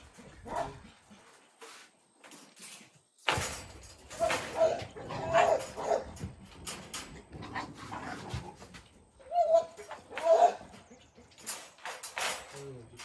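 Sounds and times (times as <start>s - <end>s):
knocks and rattles: 2.2s - 9.0s, 9.8s - 13.0s
dog whining: 9.2s - 11.0s.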